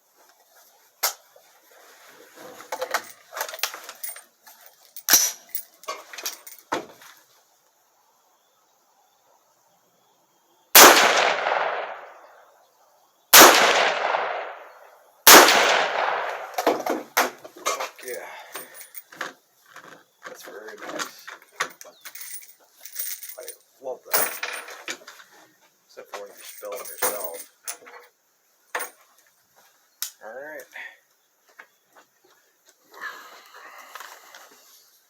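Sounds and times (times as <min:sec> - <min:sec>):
gunshots: 0:10.8 - 0:12.2, 0:13.4 - 0:14.7, 0:15.3 - 0:16.8
rifle metallic clicks: 0:15.3 - 0:16.8.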